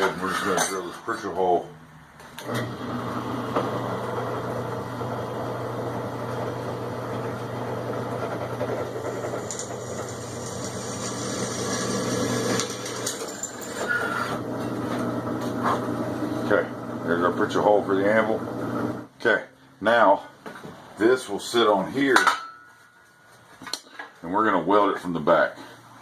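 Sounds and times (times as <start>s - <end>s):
electric drill boring sheet steel: 2.4s - 19.1s.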